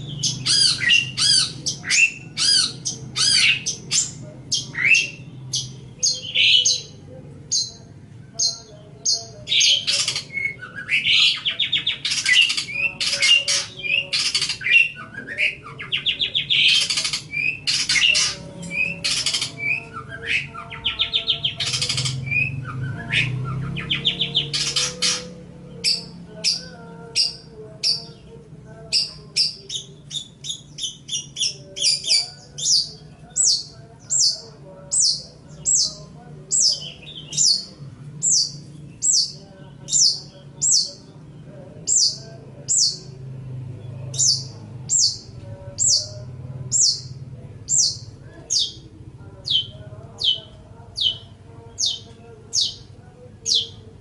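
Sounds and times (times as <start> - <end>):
bird chirping and rasping: 0.0 - 54.0.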